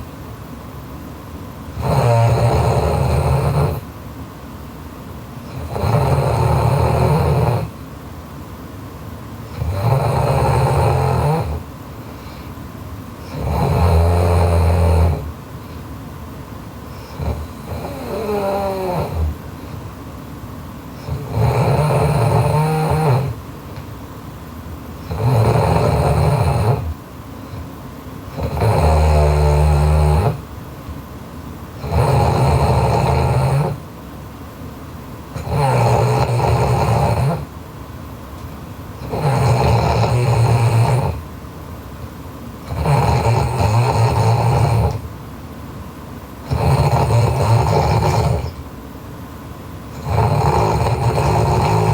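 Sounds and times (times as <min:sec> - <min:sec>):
woman snoring loudly: 0:01.8 - 0:03.8, 0:05.5 - 0:07.7, 0:09.5 - 0:11.6, 0:13.2 - 0:15.3, 0:17.0 - 0:19.4, 0:21.0 - 0:23.4, 0:25.0 - 0:27.0, 0:28.3 - 0:30.4, 0:31.8 - 0:33.8, 0:35.4 - 0:37.5, 0:39.0 - 0:41.2, 0:42.7 - 0:45.0, 0:46.5 - 0:48.6, 0:50.0 - 0:51.9.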